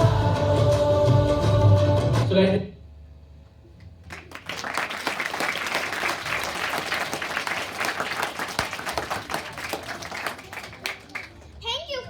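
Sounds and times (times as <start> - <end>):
audience applauding: 4.0 - 11.6.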